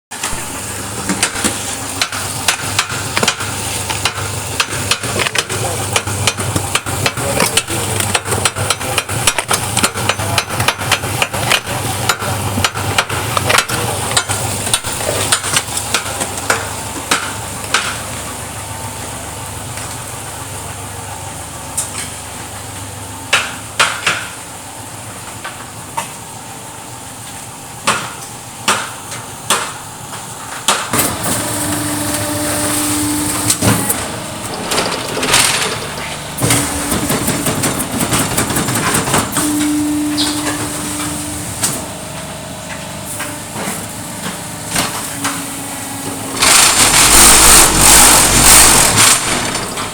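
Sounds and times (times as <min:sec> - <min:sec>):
machine hum: 0:00.1 - 0:23.8, 0:29.3 - 0:49.9
machine rattling knocks: 0:33.4 - 0:39.5, 0:46.4 - 0:49.9.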